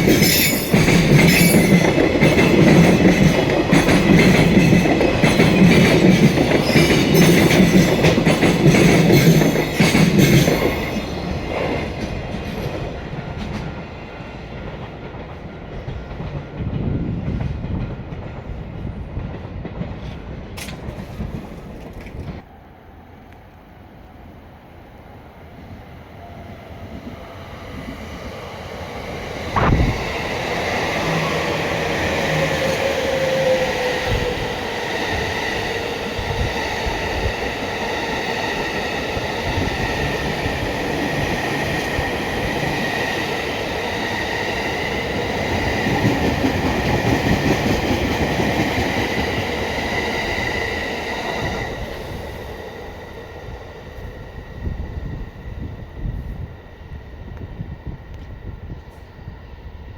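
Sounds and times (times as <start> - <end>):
train wheels squealing: 0.0 - 11.9
rumble and clatter of train cars: 0.0 - 22.6, 25.7 - 59.9
sharp bang: 29.6 - 30.0.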